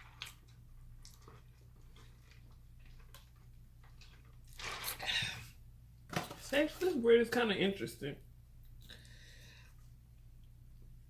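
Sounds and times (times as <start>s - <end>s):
person chewing food: 0.0s - 4.7s.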